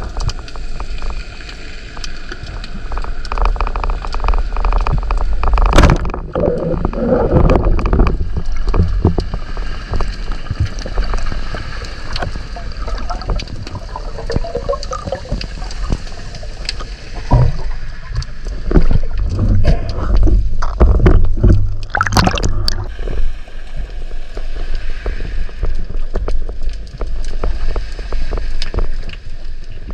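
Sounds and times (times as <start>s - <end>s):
water gurgling and sloshing: 0.0s - 29.9s
sharp splashes: 21.8s - 22.9s.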